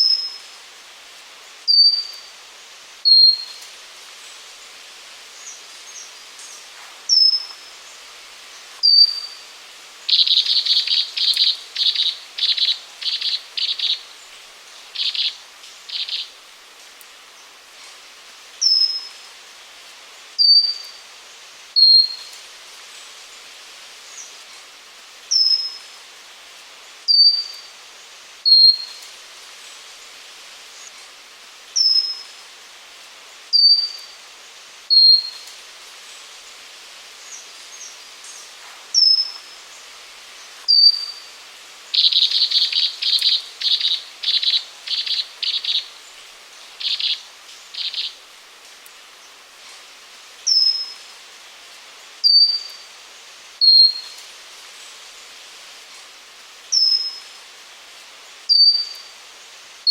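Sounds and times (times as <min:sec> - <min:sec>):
steady background hiss: 0:00.0 - 0:59.9
bird whistling high thin notes: 0:01.7 - 0:02.3, 0:03.1 - 0:03.6, 0:08.8 - 0:09.4, 0:33.6 - 0:34.1, 0:40.7 - 0:41.3, 0:52.2 - 0:52.8, 0:58.5 - 0:59.1.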